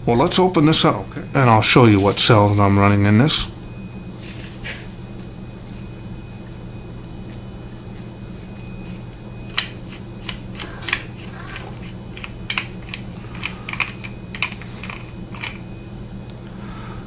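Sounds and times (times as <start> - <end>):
low hum: 0.0 - 17.0
flashlight cap unscrewing clicks: 9.5 - 15.6.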